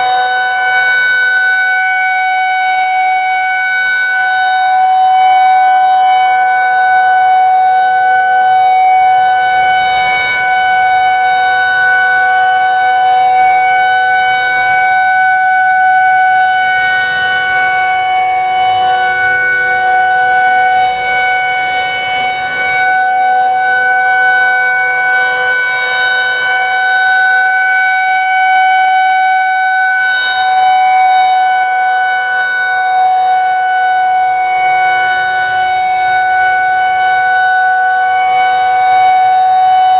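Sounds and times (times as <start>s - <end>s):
steady warning siren tone: 0.0s - 39.9s.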